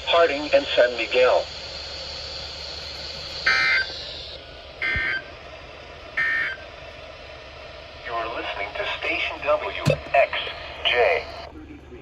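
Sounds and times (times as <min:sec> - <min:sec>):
radio hiss: 0:00.0 - 0:05.9, 0:06.6 - 0:12.0.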